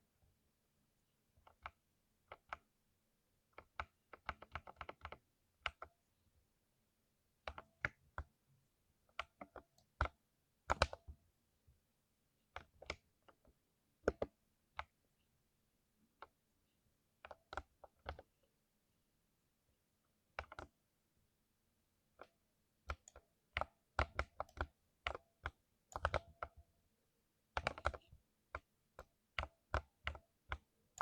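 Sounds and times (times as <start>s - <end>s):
mechanical keyboard typing: 3.6s - 5.9s, 22.9s - 26.5s, 27.5s - 31.0s.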